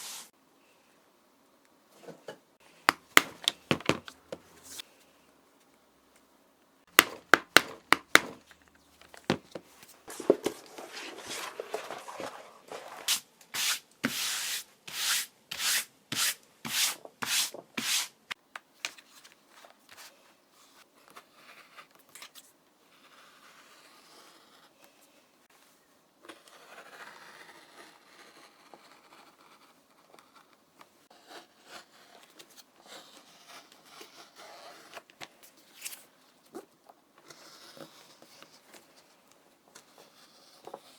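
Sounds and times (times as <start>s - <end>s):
quiet scraping and handling: 2.0s - 5.7s.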